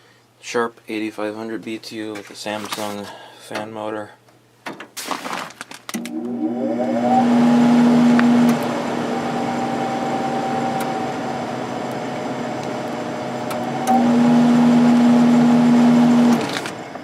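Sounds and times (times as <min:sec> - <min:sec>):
air conditioner fan whirring: 0:06.0 - 0:17.0.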